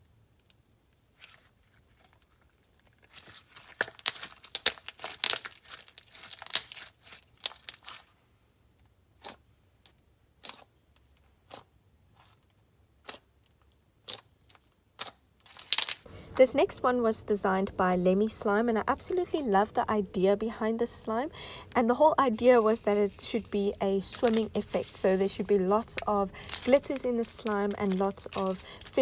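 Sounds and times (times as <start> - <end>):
crunchy slime crackling and popping: 0.4 - 8.1, 9.1 - 16.1, 22.6 - 29.0.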